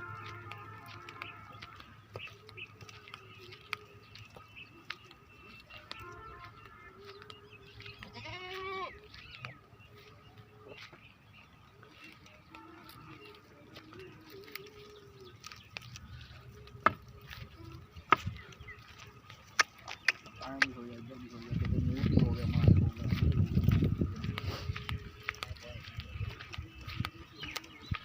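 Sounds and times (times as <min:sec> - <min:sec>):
goat bleating: 0:07.9 - 0:09.0.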